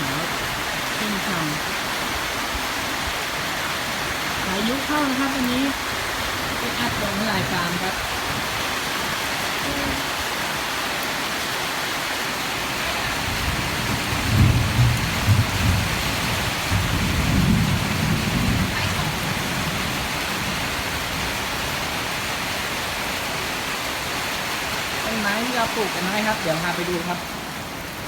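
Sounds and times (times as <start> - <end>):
heavy rain pouring: 0.0 - 28.0
thunder rumbling: 12.8 - 21.8.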